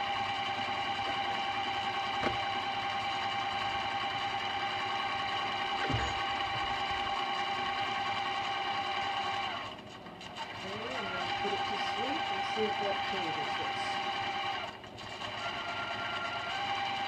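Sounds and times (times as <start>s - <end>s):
speaker drone with high tones: 5.8s - 7.1s.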